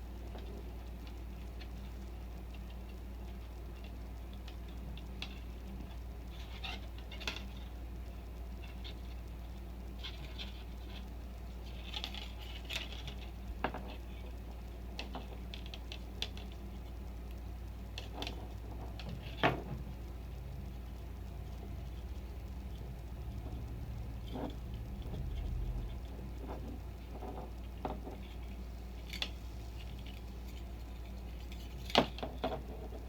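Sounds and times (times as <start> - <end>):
small parts clicking and tapping: 0.0 - 33.0
steady low hum: 0.0 - 33.0.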